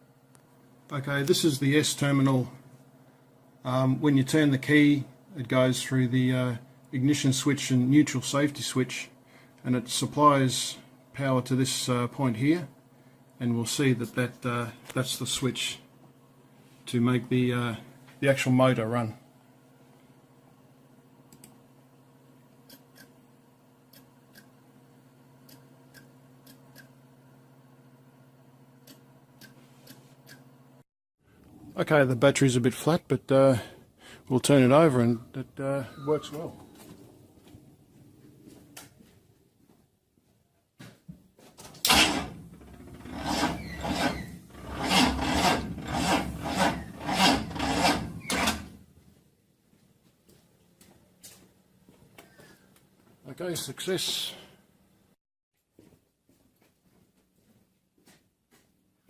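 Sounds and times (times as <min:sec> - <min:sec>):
steady electrical hum: 0:00.0 - 0:55.2
starter motor cranking engine: 0:41.8 - 0:48.8.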